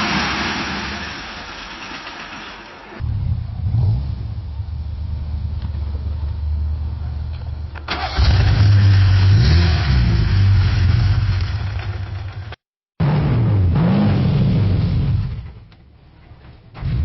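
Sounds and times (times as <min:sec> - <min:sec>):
car engine starting and revving: 0:07.9 - 0:12.1.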